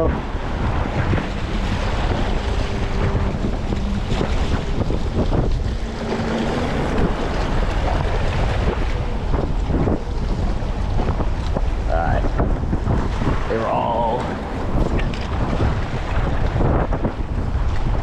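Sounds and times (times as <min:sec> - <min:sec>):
open water: 0:00.0 - 0:18.0
wind buffeting microphone: 0:00.0 - 0:18.0.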